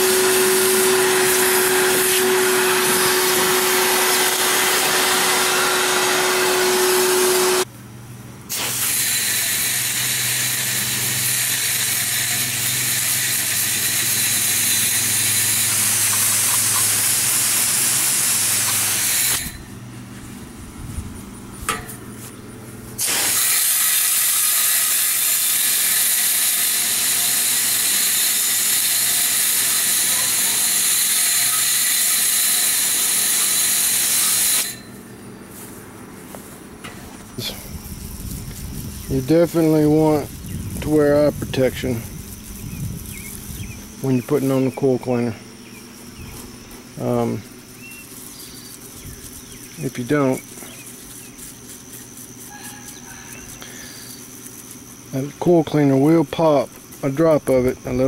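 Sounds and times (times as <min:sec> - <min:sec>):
spray hissing: 0:14.1 - 0:19.4, 0:23.0 - 0:24.1.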